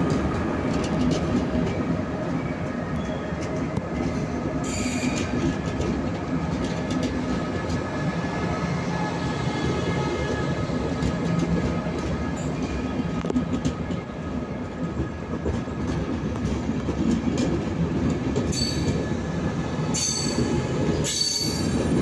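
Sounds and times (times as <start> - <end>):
train rumble and wheel clatter: 0.0 - 22.0
high squeal: 19.9 - 22.0.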